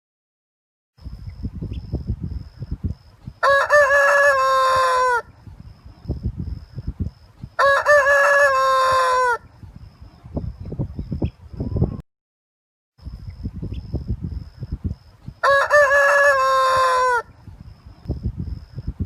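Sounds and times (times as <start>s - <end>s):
rooster crowing: 3.4s - 5.3s, 7.6s - 9.5s, 15.4s - 17.4s.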